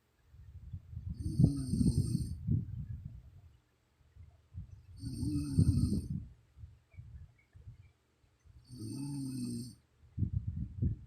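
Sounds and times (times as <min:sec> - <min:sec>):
faint low puffs of breath: 0:00.5 - 0:03.4, 0:04.5 - 0:07.9
woman snoring: 0:01.2 - 0:02.4, 0:05.0 - 0:06.1, 0:08.7 - 0:09.8.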